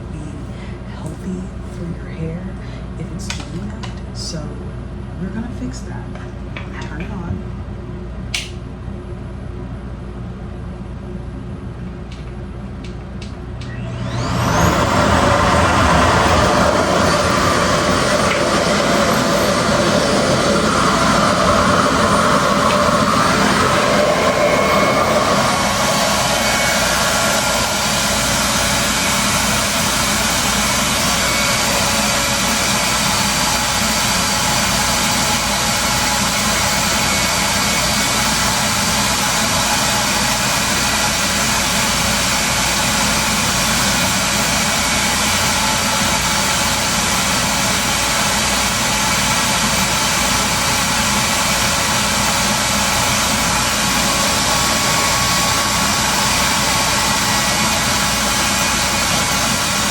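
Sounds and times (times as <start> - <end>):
hair dryer whooshing: 13.2 - 59.9.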